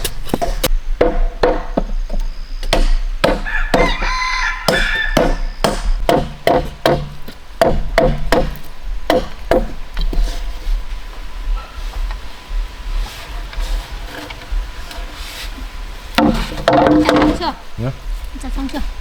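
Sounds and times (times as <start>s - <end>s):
blade chopping bamboo: 2.6s - 10.5s, 16.1s - 17.5s
rooster crowing: 3.3s - 5.6s.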